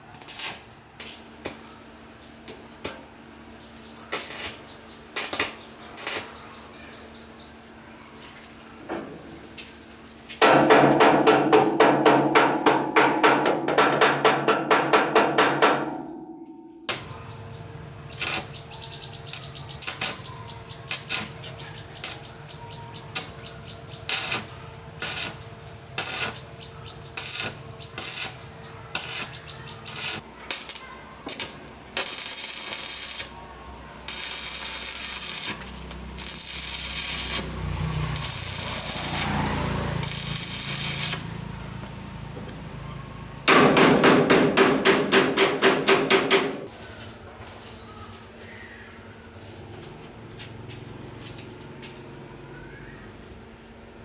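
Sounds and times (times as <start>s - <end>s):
sharp hammer-like strikes: 10.4s - 17.1s, 43.5s - 46.7s
bursts of hiss: 18.0s - 33.4s, 34.0s - 41.4s.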